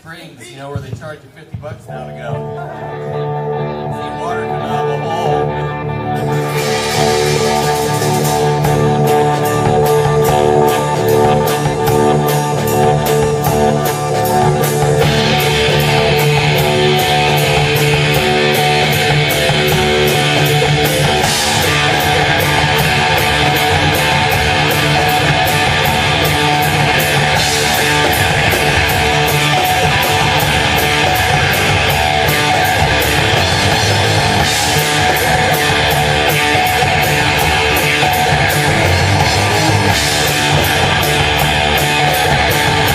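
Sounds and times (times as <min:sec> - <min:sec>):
drum kit beat: 0:00.0 - 0:42.9
electric guitar: 0:01.6 - 0:42.9
cymbal crashes: 0:06.3 - 0:09.4.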